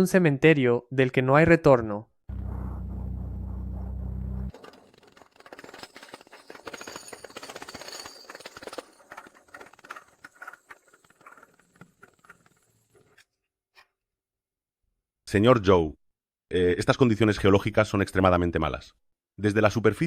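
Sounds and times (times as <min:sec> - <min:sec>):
clatter of clicks and knocks: 0:04.5 - 0:13.2.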